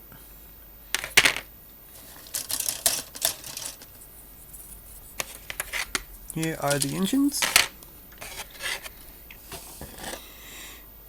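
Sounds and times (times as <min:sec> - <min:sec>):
plastic parts clicking and clattering: 0:01.0 - 0:04.0, 0:05.2 - 0:10.2.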